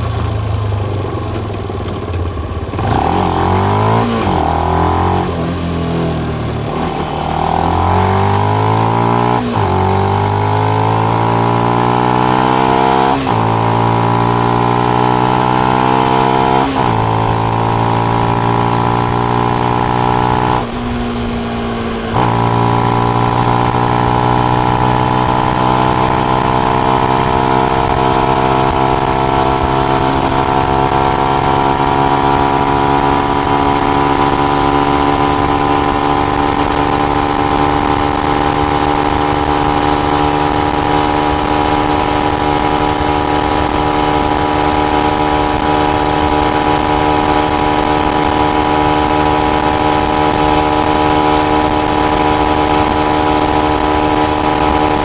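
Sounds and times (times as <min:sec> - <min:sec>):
motorcycle engine running: 0:00.0 - 0:55.0.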